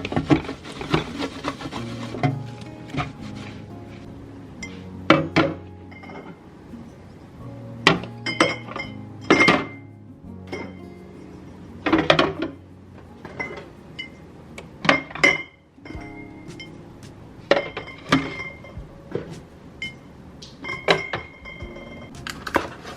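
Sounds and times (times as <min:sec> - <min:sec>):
soft background music: 0:00.0 - 0:22.9
containers and glassware clinking: 0:14.8 - 0:22.9.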